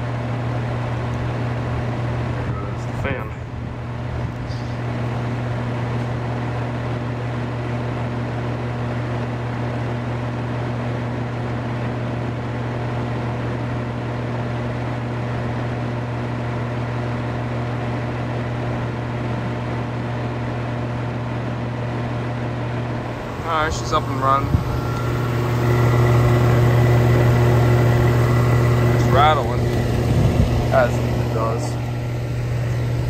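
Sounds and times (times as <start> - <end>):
air conditioner humming: 0.0 - 7.6, 21.7 - 33.0.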